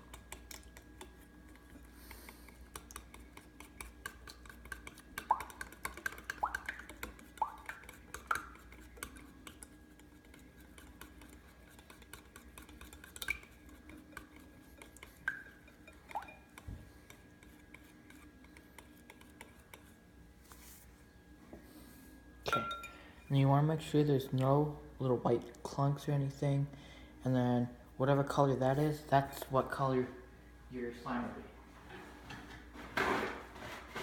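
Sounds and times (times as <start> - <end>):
spoon scraping bowl: 0.0 - 20.0
spoon clinking against bowl: 22.5 - 23.2.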